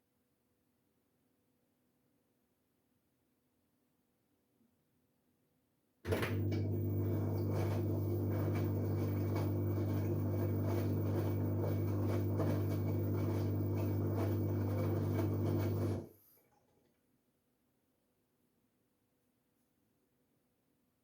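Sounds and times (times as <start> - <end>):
washing machine motor hum: 6.1 - 16.3.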